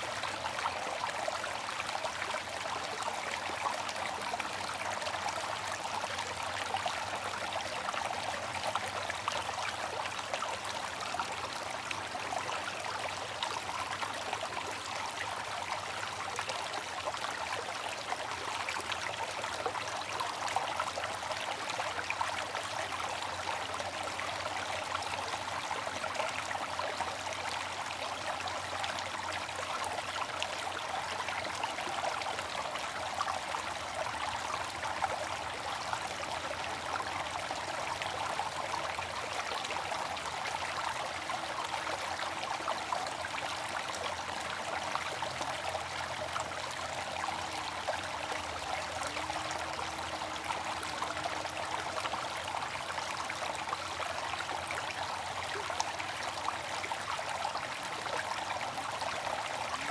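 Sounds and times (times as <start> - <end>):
water trickling and splashing: 0.0 - 59.9.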